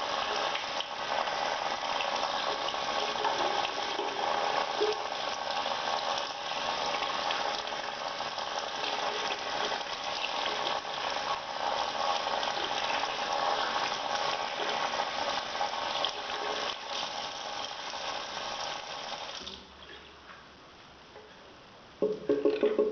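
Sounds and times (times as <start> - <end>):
tap water running over hands: 0.0 - 19.6.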